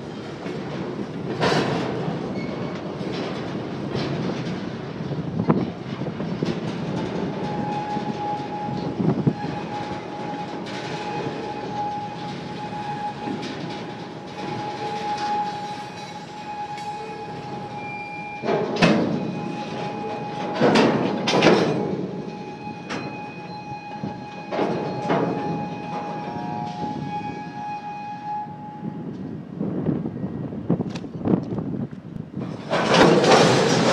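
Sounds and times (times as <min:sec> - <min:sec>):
freight train cars moving: 0:00.0 - 0:33.9
metallic clanks: 0:05.4 - 0:27.2, 0:32.4 - 0:33.9
high wheel squeal: 0:07.4 - 0:29.0.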